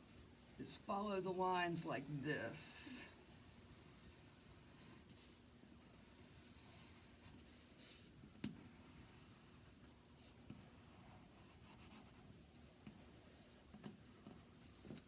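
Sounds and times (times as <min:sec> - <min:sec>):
scratchy marking strokes on wood: 0:03.5 - 0:15.0.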